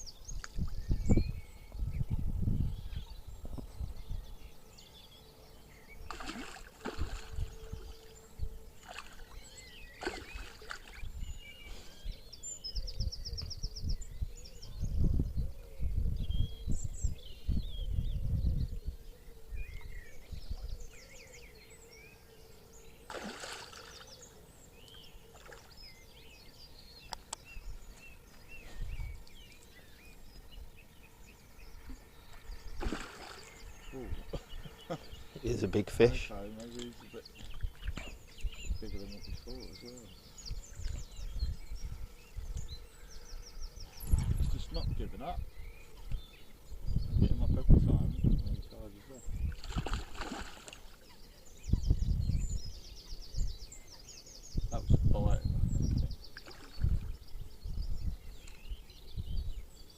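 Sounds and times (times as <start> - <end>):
wind buffeting microphone: 0.0 - 4.6, 6.0 - 9.4, 10.0 - 21.0, 28.5 - 29.5, 31.6 - 50.7, 51.5 - 59.9
small birds chirping and trilling: 0.0 - 59.9.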